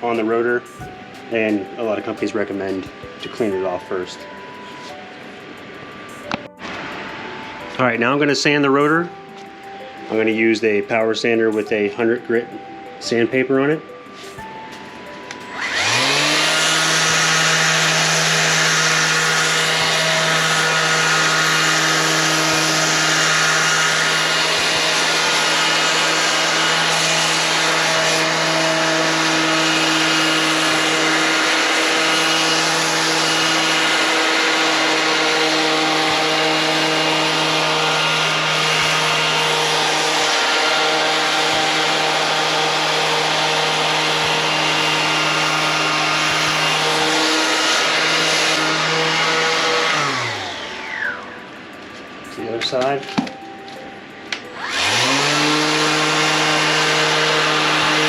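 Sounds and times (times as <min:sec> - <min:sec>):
power sander grinding metal: 0:00.0 - 0:05.0, 0:15.3 - 0:51.5, 0:54.4 - 0:58.0.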